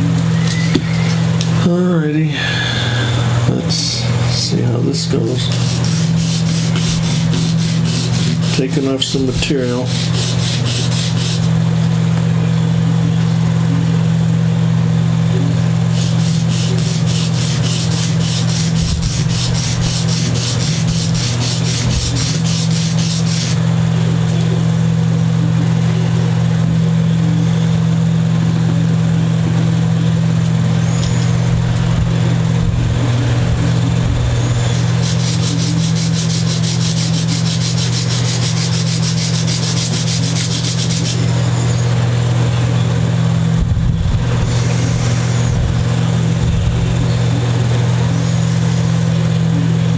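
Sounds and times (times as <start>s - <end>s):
loud steady low hum: 0.0s - 49.9s
sanding block strokes: 5.3s - 11.6s, 15.9s - 23.6s, 34.6s - 41.3s.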